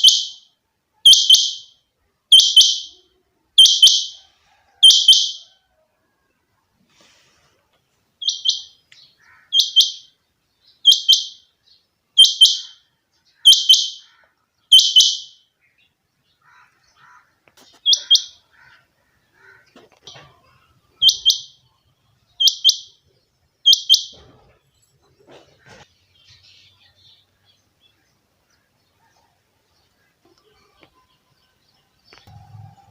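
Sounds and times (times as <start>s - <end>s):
quail calling: 0.0s - 0.4s, 2.3s - 4.2s, 4.8s - 5.6s, 8.2s - 10.1s, 12.2s - 15.4s, 16.4s - 21.6s
faint low chirps: 25.9s - 32.9s.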